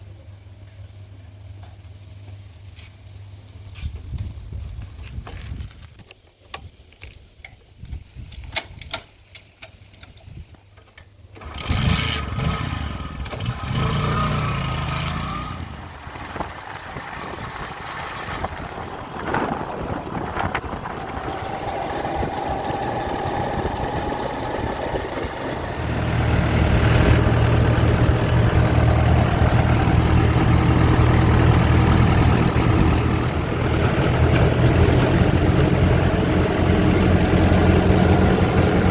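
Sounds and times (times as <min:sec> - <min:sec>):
diesel engine of heavy machinery: 0:11.4 - 0:38.9.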